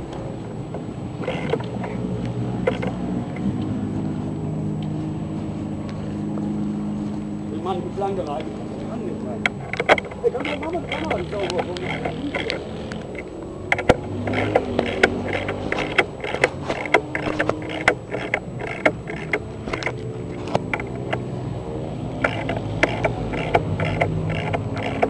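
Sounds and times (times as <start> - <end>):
sharp clicks and knocks: 0.0 - 3.8, 9.3 - 25.0
quad engine running: 0.0 - 25.0.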